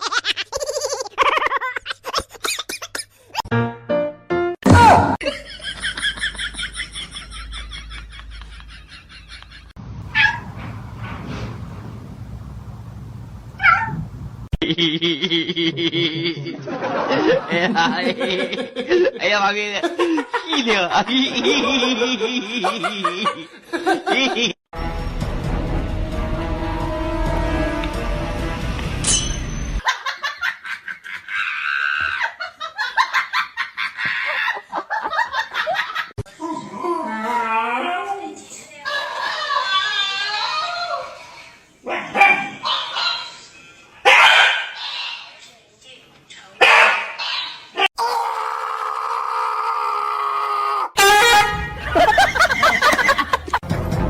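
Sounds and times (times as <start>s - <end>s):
person laughing high-pitched: 0.0s - 3.5s, 14.6s - 16.6s
cat meowing: 13.6s - 14.0s.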